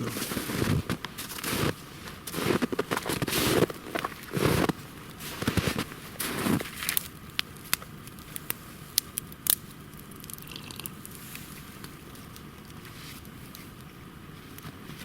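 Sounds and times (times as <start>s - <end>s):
footsteps crunching in snow: 0.0s - 7.1s
campfire crackling and popping: 0.2s - 15.0s.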